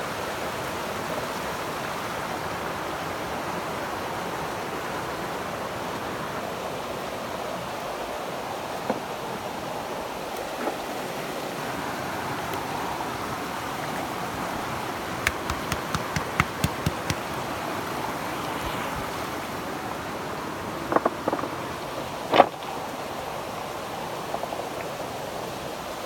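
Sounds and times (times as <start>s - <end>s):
river water rushing: 4.1s - 20.9s
sharp clicks: 15.3s - 17.3s.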